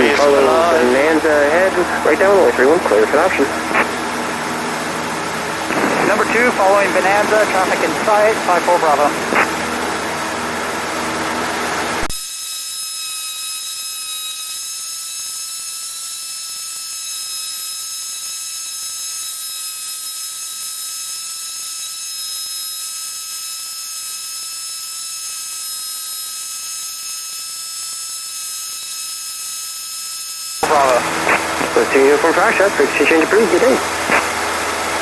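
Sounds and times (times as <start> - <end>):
electrical hiss: 0.0 - 9.8, 30.6 - 35.0
cabin engine noise: 0.0 - 12.2, 30.6 - 35.0.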